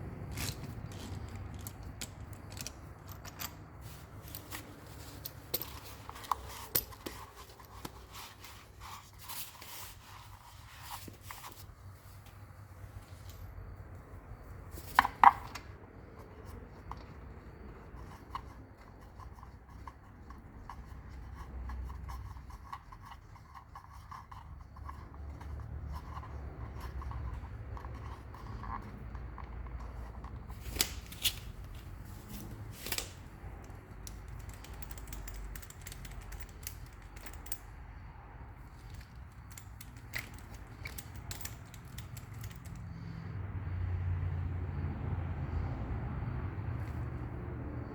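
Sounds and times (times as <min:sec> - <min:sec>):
metal clinks: 0:00.3 - 0:08.2, 0:32.9 - 0:43.2.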